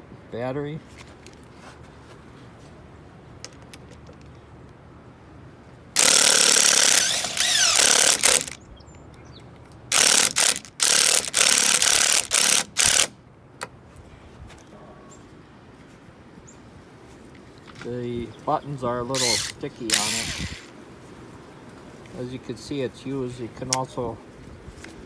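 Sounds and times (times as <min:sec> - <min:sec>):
cordless impact driver running: 0:06.0 - 0:08.6, 0:09.9 - 0:13.1, 0:19.2 - 0:20.7.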